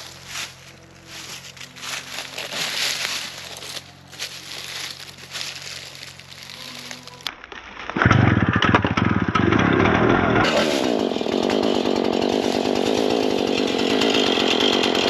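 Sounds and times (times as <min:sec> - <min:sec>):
rustling in dry leaves: 0:00.0 - 0:07.9, 0:10.5 - 0:13.7.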